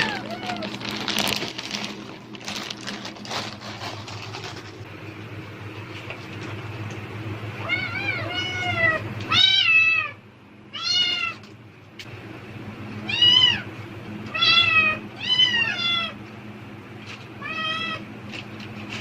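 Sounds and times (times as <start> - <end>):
cat meowing: 0.0 - 0.8, 7.6 - 11.4, 14.3 - 16.2, 17.4 - 18.0
plastic bag rustling: 0.0 - 4.9.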